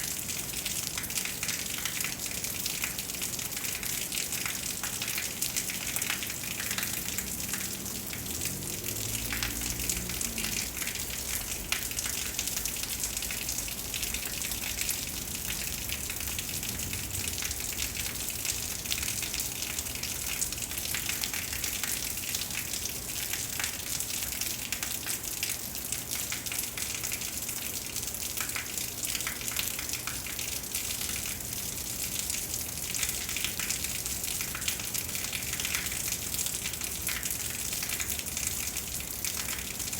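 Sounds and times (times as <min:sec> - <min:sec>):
heavy rain falling: 0:00.2 - 0:27.5.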